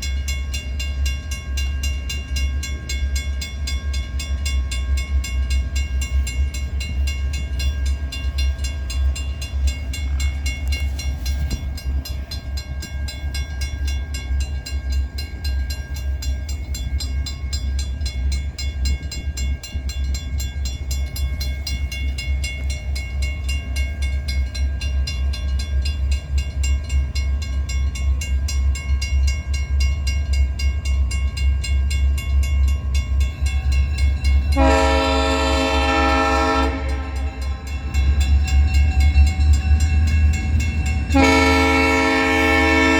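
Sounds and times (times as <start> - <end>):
train rumbling past: 0.0 - 42.9
locomotive horn: 34.6 - 37.9, 41.1 - 42.9.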